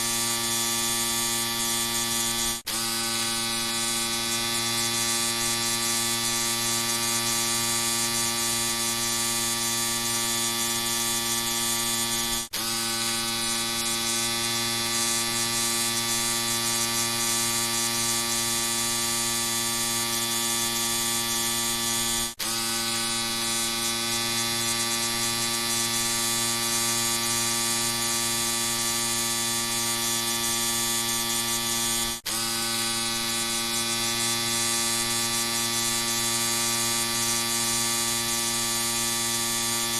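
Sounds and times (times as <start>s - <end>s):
electric shaver buzzing: 0.0s - 39.9s.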